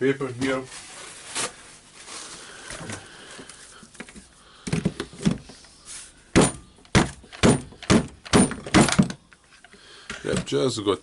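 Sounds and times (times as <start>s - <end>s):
sharp knocks on tool housing: 6.4s - 9.2s.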